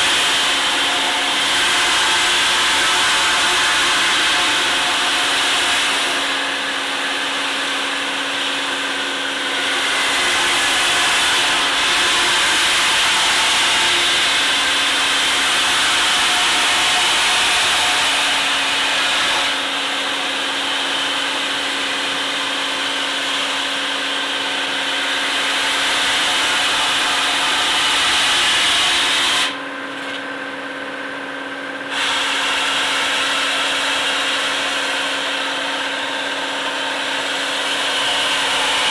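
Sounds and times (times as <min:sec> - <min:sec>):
sanding machine motor hum: 0:00.0 - 0:38.9.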